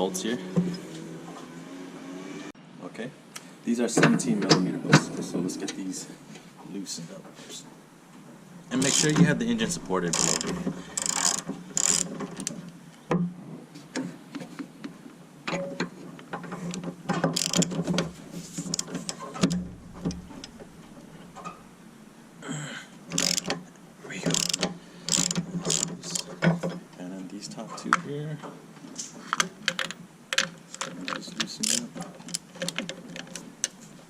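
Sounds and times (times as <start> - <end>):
sharp metal knocks: 8.8 - 12.5, 17.1 - 21.9
ratchet wrench clicking: 8.8 - 12.6, 17.3 - 17.8, 18.7 - 21.1, 23.1 - 23.6, 24.3 - 26.3, 31.6 - 33.8.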